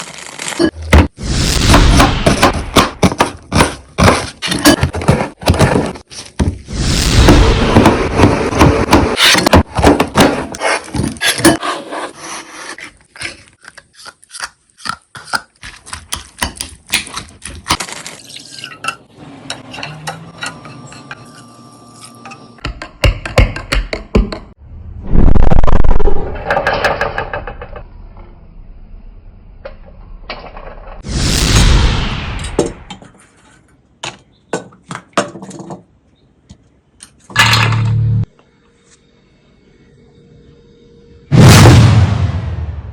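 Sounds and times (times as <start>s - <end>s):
utensils scraping and tapping dishes: 10.4s - 23.8s
dishes and utensils clattering: 18.3s - 21.4s.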